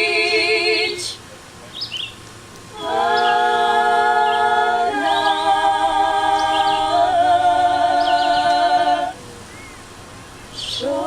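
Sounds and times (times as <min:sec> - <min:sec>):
a cappella group singing harmony: 0:00.0 - 0:01.2, 0:02.7 - 0:09.2, 0:10.6 - 0:11.0.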